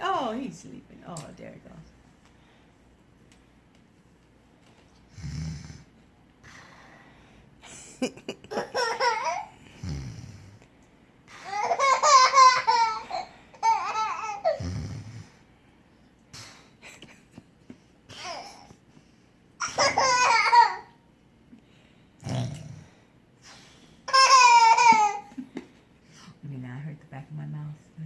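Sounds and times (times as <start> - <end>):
toddler pretend snoring: 5.1 - 5.9, 9.6 - 10.6, 14.2 - 15.4, 22.2 - 23.0.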